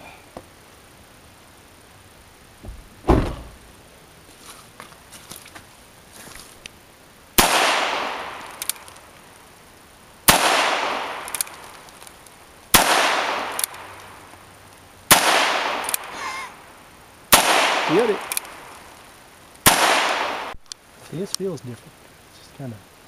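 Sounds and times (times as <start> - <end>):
echoing gunshots: 7.4 - 8.7, 10.3 - 11.7, 12.7 - 14.0, 15.1 - 16.2, 17.3 - 18.9, 19.6 - 20.6.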